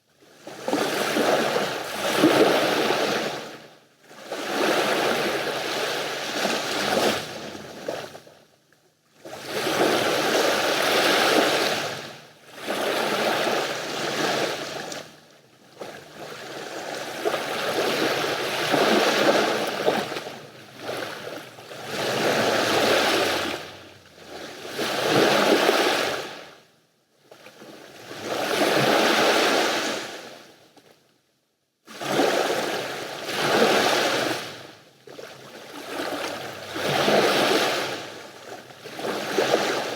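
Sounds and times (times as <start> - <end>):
sea waves breaking: 9.4 - 15.2, 15.8 - 26.4, 35.6 - 39.9.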